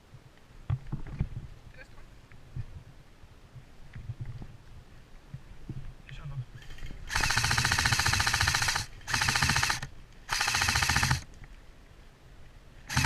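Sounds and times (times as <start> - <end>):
airsoft gun firing full-auto: 7.1 - 11.3.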